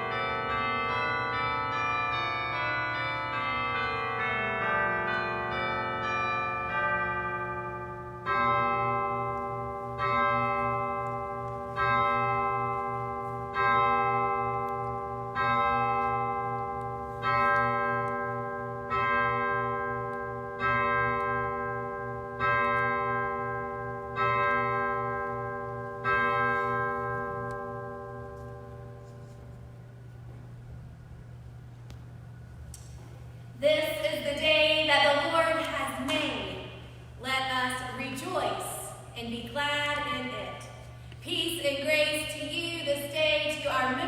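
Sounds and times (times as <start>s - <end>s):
church bells falling run: 0.0s - 29.8s.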